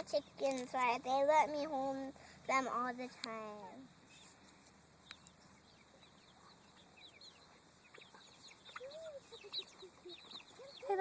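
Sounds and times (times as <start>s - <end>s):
chickens clucking: 3.9s - 11.0s.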